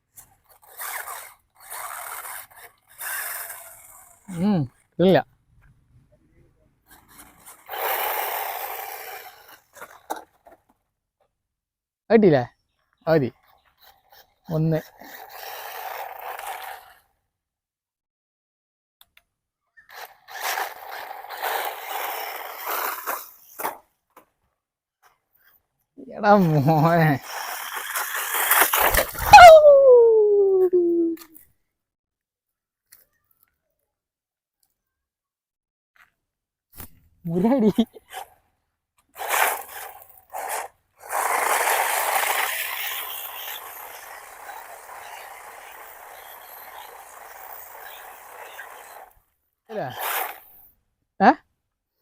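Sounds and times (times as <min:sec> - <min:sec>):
tyres and drivetrain scraping: 0:00.0 - 0:11.3, 0:12.9 - 0:17.2, 0:19.8 - 0:29.8, 0:37.6 - 0:50.6
rc car motor bursts: 0:00.4 - 0:04.4, 0:06.9 - 0:10.4, 0:13.8 - 0:17.2, 0:19.8 - 0:23.8, 0:26.5 - 0:29.3, 0:39.2 - 0:50.6.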